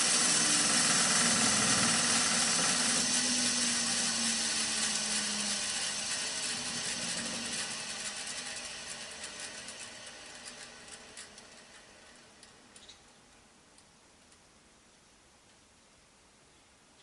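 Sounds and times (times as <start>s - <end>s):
bench grinder spinning down: 0.0s - 12.6s.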